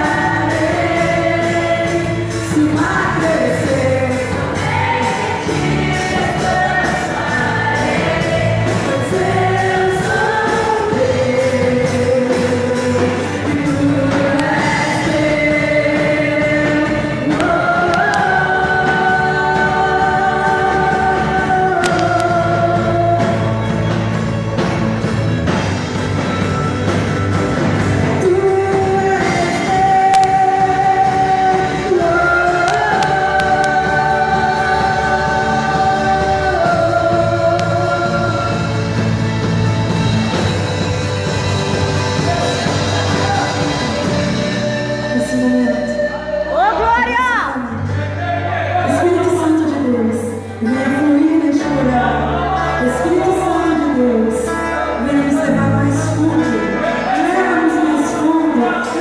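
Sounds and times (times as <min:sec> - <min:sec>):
people singing sustained notes: 0:00.0 - 0:24.3, 0:28.2 - 0:46.9
band playing: 0:00.0 - 0:59.0.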